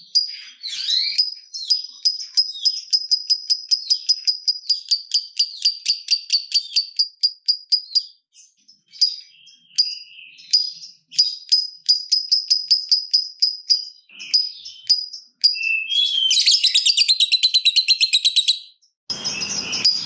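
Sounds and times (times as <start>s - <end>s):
lovebird ticking call: 0.2s - 8.2s, 8.9s - 20.0s
bird chattering: 10.6s - 20.0s.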